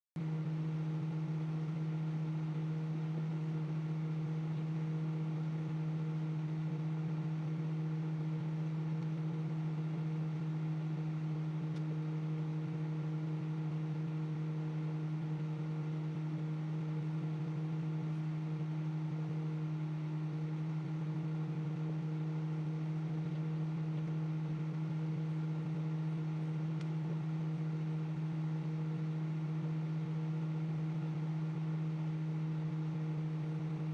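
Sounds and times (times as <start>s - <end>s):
microwave oven humming: 0.2s - 33.9s.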